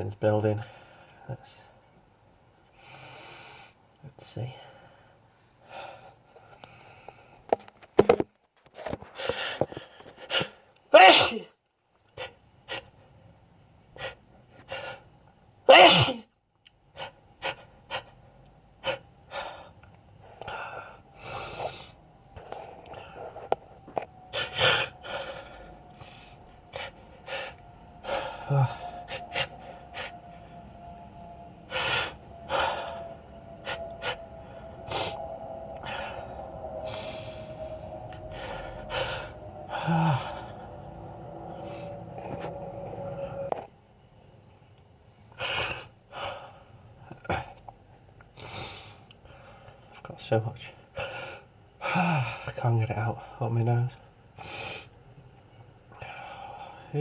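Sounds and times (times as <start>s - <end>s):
person sneezing: 10.9s - 11.6s, 15.7s - 16.3s.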